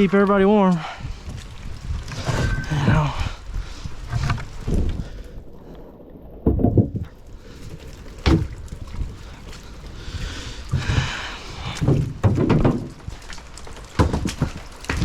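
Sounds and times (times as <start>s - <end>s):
dull thuds and knocks: 6.4s - 7.1s, 8.2s - 8.6s, 11.8s - 13.1s, 13.9s - 15.0s.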